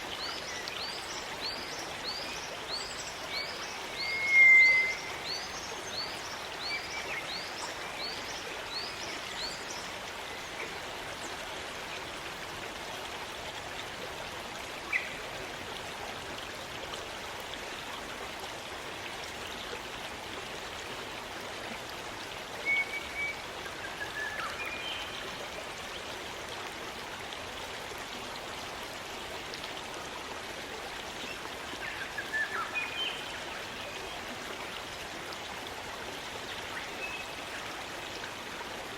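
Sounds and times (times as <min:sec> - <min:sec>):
stream water running: 0:00.0 - 0:38.9
bird calls: 0:03.8 - 0:05.6.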